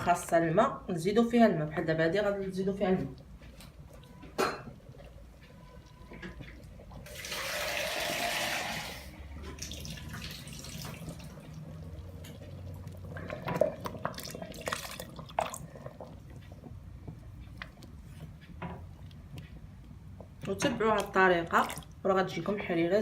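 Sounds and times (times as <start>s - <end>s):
water poured into pot: 7.0s - 16.1s.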